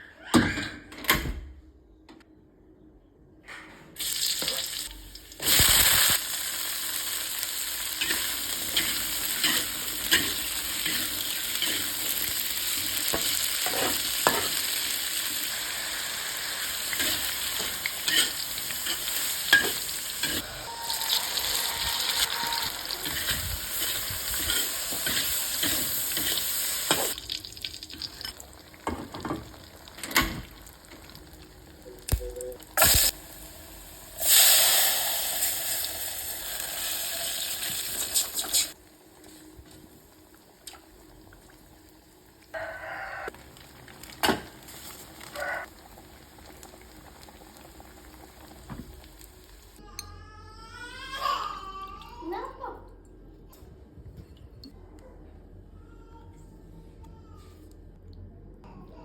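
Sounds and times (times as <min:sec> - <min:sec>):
food sizzling in hot oil: 0:04.0 - 0:31.4, 0:32.8 - 0:38.8.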